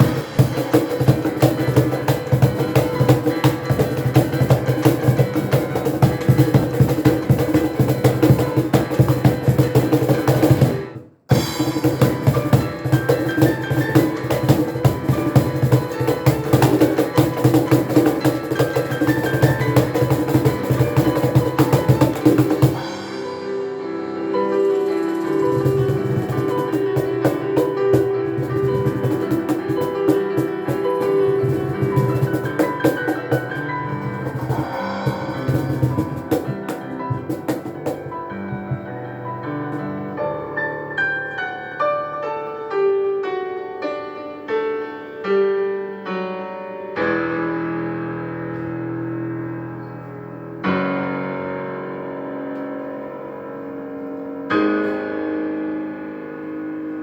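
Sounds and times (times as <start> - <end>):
percussion struck: 0.0 - 39.9
street piano playing: 0.0 - 57.0.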